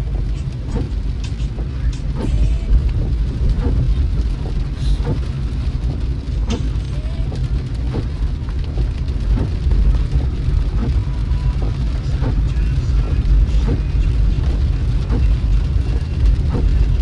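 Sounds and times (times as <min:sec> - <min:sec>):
car engine and road noise: 0:00.0 - 0:17.0.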